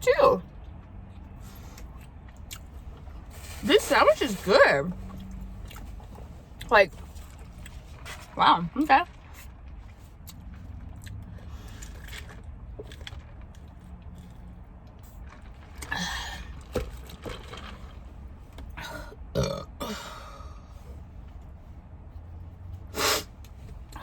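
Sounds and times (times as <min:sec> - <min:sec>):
chewing and mouth noises: 0:00.4 - 0:03.6, 0:04.8 - 0:08.4, 0:09.0 - 0:17.7
woman burping loudly: 0:18.8 - 0:20.4.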